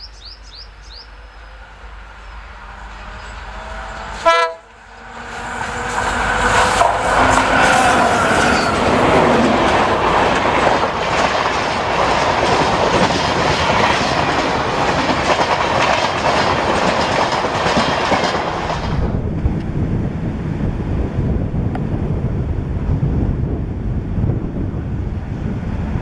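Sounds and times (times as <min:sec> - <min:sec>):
train rumbling past: 0:00.0 - 0:26.0
train horn: 0:02.7 - 0:09.0
wheel clatter on rails: 0:08.4 - 0:19.0.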